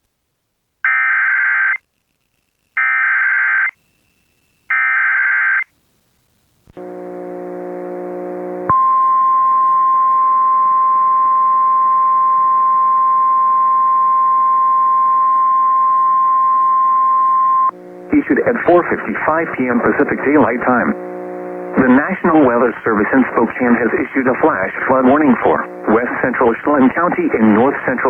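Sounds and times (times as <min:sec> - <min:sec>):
buzzing hum with hiss: 0:05.8 - 0:28.0
steady attention tone: 0:06.8 - 0:28.0.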